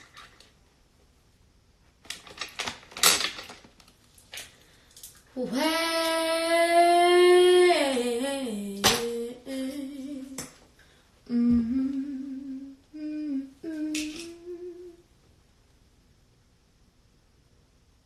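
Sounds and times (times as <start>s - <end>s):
woman humming: 5.4s - 10.4s, 11.3s - 15.0s.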